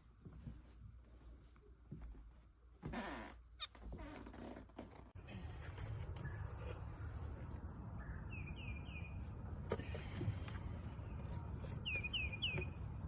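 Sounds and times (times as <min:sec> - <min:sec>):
small bird chirping: 0:11.8 - 0:12.8.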